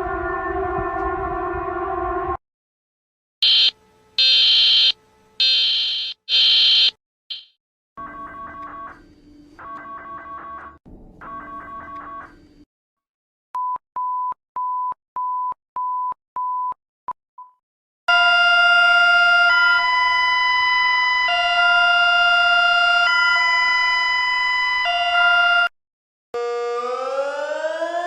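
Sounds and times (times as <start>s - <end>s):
two-tone alarm: 3.4s - 12.4s, 18.1s - 25.7s, 26.4s - 28.0s.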